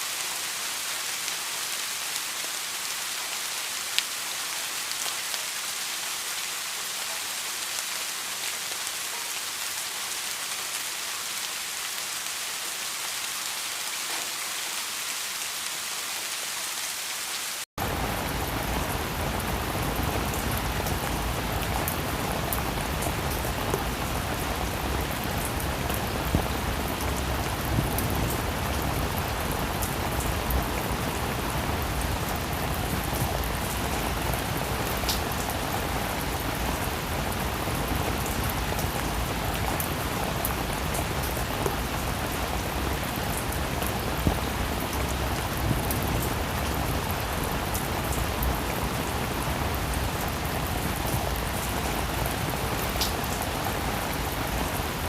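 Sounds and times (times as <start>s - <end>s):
heavy downpour: 0.0s - 55.0s
steady rain: 0.0s - 55.0s.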